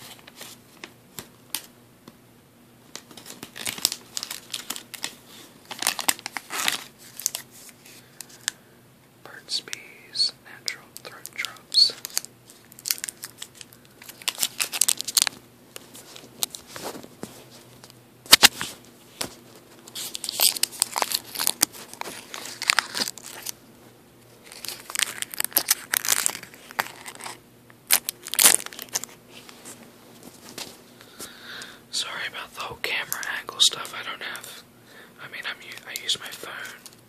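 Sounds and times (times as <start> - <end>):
plastic bag crinkling: 3.1 - 8.4, 11.2 - 17.0, 19.7 - 23.6, 24.3 - 30.8.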